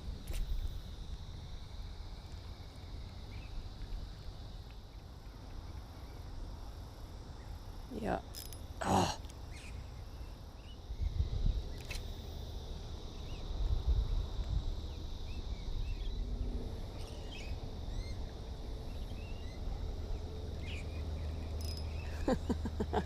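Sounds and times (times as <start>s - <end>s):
insect drone: 0.0s - 23.0s.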